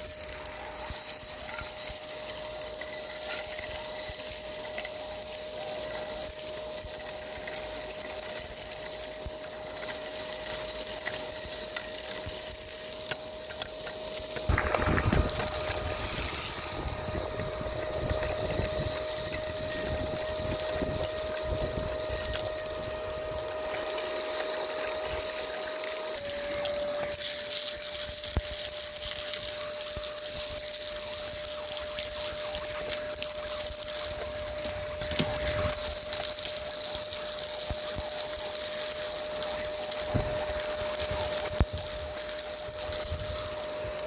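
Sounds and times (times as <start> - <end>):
debris crunching and rattling: 0.0 - 44.0
vacuum cleaner motor whine: 0.7 - 44.0
low rumbling and clatter: 14.5 - 21.9.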